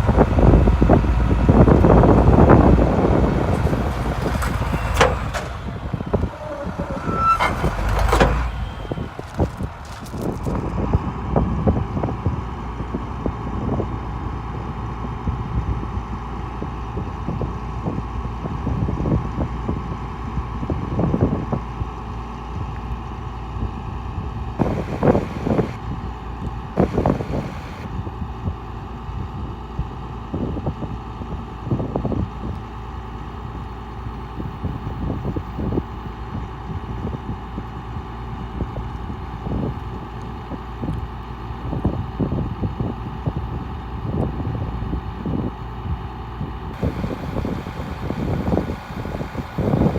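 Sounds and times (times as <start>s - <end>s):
low thumps: 0.0s - 10.8s
truck engine running: 0.0s - 49.9s.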